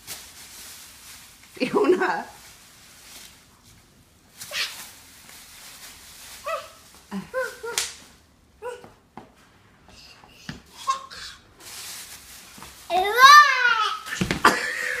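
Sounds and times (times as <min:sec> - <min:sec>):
bubble wrap crinkling: 0:00.0 - 0:08.3, 0:11.5 - 0:14.7
child squealing: 0:13.0 - 0:14.1.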